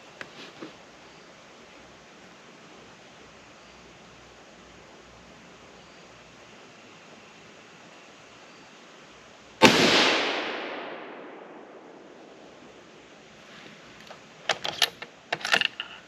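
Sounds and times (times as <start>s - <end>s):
rifle shot echoing: 9.6s - 12.8s
rifle bolt clicks: 14.5s - 16.0s.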